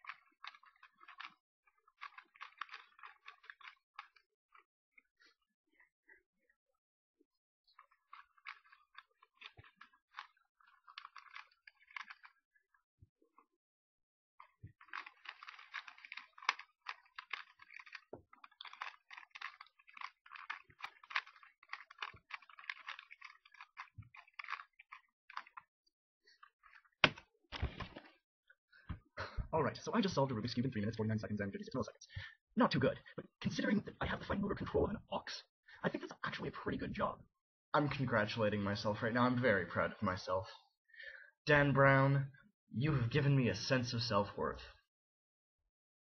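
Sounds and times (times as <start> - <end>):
puzzle cube clicking and rattling: 0.0 - 4.7, 7.8 - 12.5, 14.4 - 25.7, 26.3 - 28.1.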